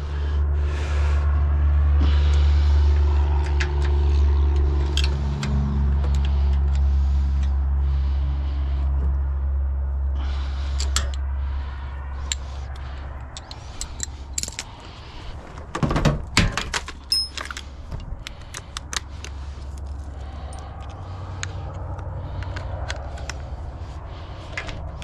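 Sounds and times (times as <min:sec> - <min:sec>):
low hum: 0:00.0 - 0:25.0
hand tools clinking on bolts: 0:12.2 - 0:15.0, 0:16.7 - 0:21.0.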